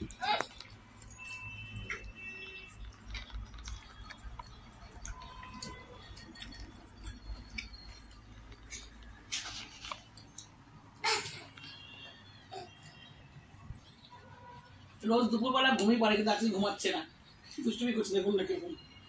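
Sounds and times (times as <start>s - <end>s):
chewing: 0.0s - 10.6s.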